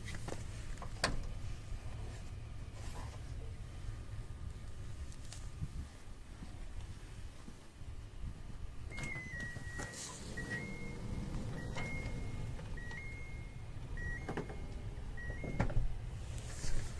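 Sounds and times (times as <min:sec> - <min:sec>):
sliding door motor hum: 0:08.9 - 0:15.8.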